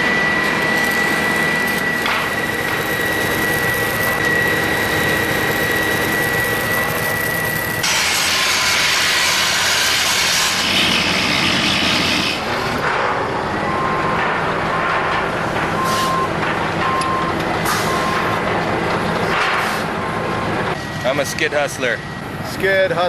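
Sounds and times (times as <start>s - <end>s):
backup alarm beeping: 0.0s - 7.8s, 13.4s - 14.8s, 15.7s - 18.4s, 20.7s - 23.0s
construction equipment engine hum: 0.0s - 23.0s
loud hiss: 7.8s - 10.8s.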